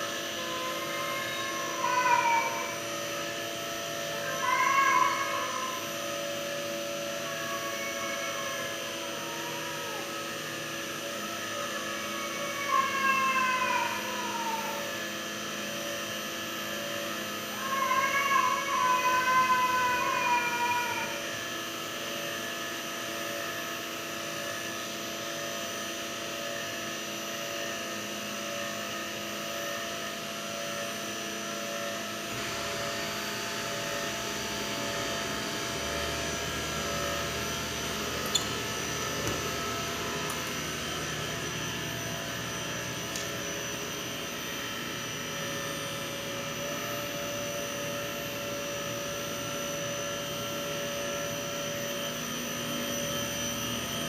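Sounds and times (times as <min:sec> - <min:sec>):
machine humming: 0:00.0 - 0:54.0
deeper hum: 0:32.2 - 0:54.0.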